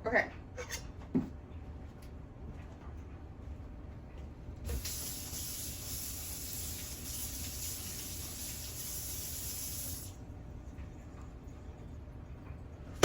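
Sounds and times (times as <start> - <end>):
tap water running into sink: 4.7 - 10.1.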